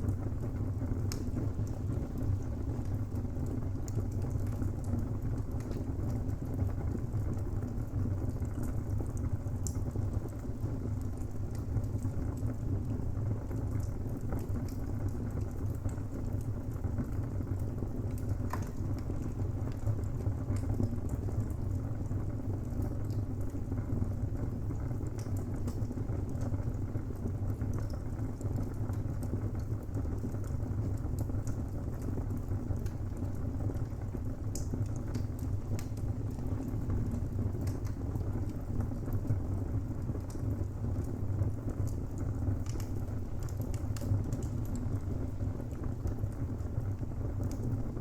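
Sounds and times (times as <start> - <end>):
burning wood crackling and popping: 0.1 - 10.4, 11.1 - 12.5, 13.6 - 23.7, 24.4 - 48.0
flames rushing in fireplace: 11.5 - 48.0.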